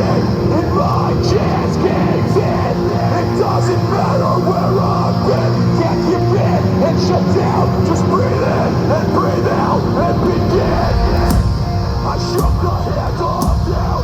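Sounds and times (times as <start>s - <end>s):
distorted guitars: 0.0s - 14.0s.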